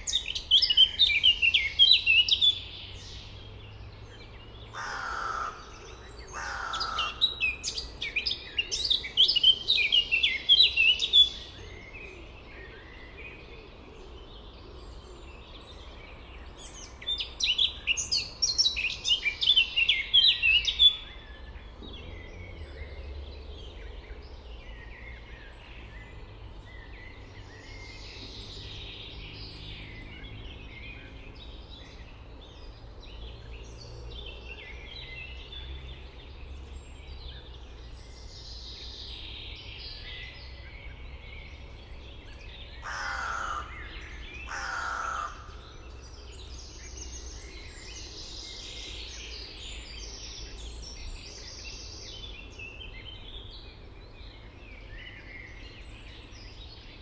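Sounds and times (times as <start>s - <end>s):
songbirds chirping: 0.0s - 57.0s
low-pitched bird calls: 4.7s - 7.7s, 42.8s - 45.8s.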